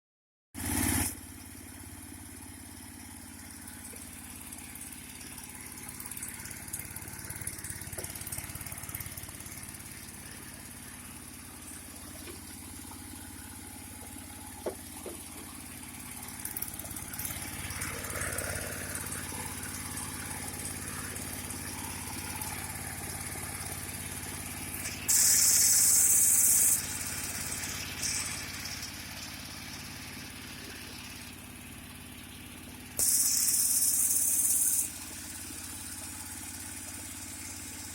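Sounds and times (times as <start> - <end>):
small engine humming: 0.6 - 37.9
loud hiss: 24.8 - 28.8, 33.0 - 35.2.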